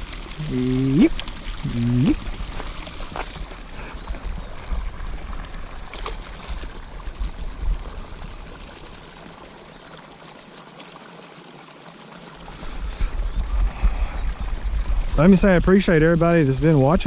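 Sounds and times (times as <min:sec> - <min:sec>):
water pouring into pond: 0:00.0 - 0:17.0
low microphone rumble: 0:12.5 - 0:17.0.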